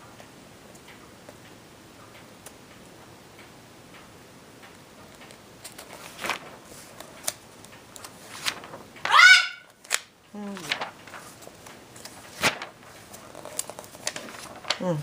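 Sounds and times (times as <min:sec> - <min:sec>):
faint clock ticking: 0:00.0 - 0:05.5
magazine pages turning: 0:05.6 - 0:09.1, 0:09.8 - 0:15.0.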